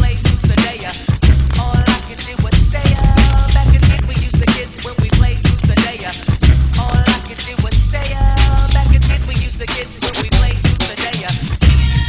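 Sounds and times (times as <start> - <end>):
rap music with heavy bass: 0.0 - 12.0.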